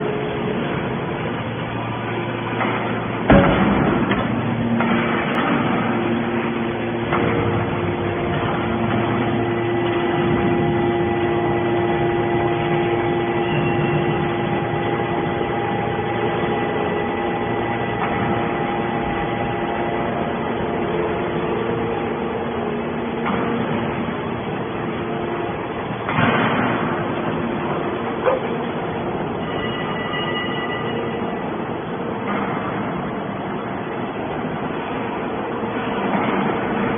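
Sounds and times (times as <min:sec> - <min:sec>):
baler motor and pump hum: 0:00.0 - 0:36.9
steady whine: 0:00.0 - 0:36.9
sharp bang: 0:02.6 - 0:04.2.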